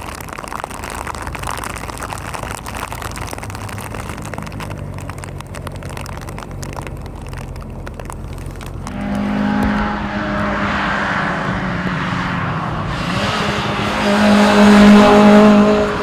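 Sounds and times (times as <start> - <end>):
small clicks and ticks: 0.0 - 9.0
car engine at low revs: 4.5 - 16.0.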